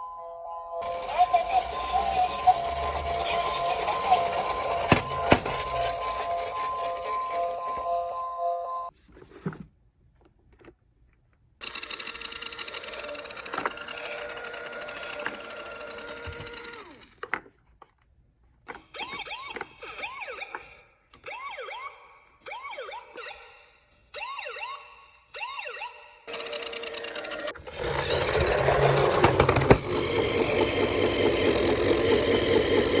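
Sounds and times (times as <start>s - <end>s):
toy police siren wailing: 0.8s - 8.9s, 12.8s - 16.4s, 18.9s - 27.3s
loud noisy whirring: 27.4s - 33.0s.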